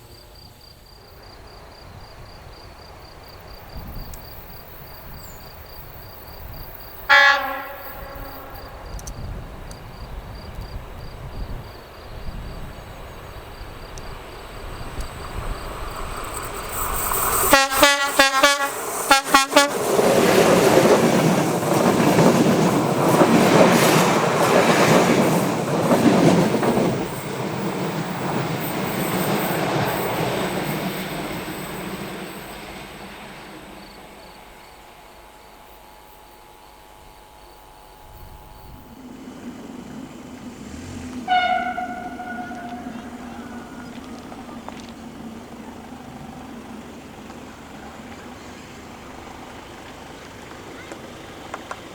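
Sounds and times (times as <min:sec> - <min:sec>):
rumble and clatter of passing train: 0:00.0 - 0:51.9
train horn blasts: 0:07.0 - 0:09.3, 0:17.5 - 0:19.8, 0:40.6 - 0:44.7.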